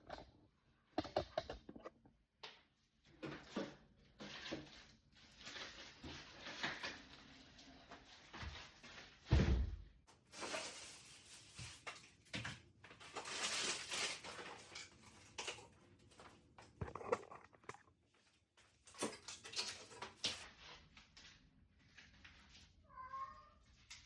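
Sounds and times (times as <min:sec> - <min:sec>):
plastic packaging rustling: 0:04.2 - 0:09.3, 0:10.3 - 0:12.2, 0:12.9 - 0:17.3, 0:18.8 - 0:20.8.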